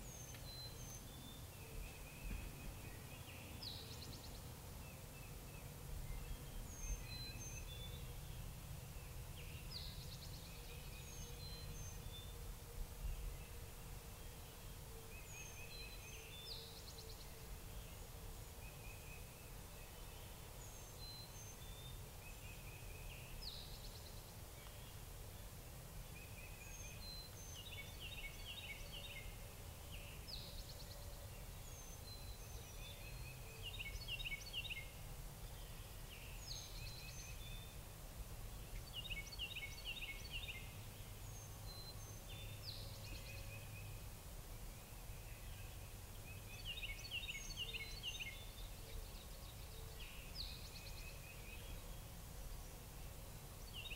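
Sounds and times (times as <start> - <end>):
songbird singing: 0.0 - 53.9.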